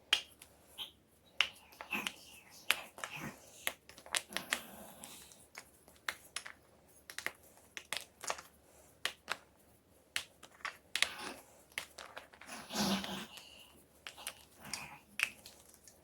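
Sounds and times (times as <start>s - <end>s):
chalk crunching: 10.1s - 16.0s.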